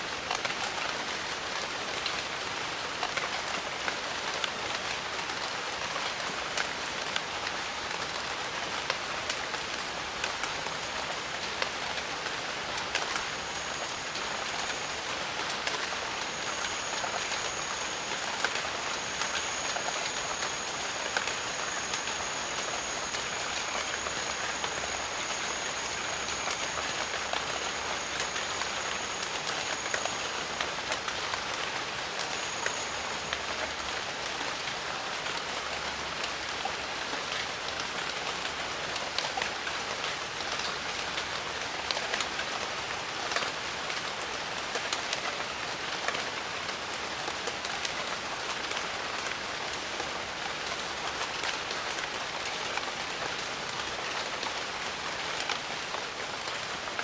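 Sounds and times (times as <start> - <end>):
rain patter: 0.0 - 57.0
high-pitched tone: 11.4 - 33.6.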